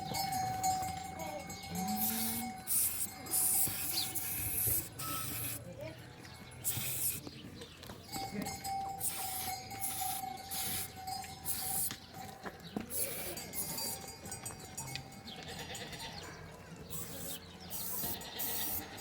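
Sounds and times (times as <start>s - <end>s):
goats and sheep bleating: 0.0s - 3.6s, 14.8s - 16.4s, 17.8s - 19.0s.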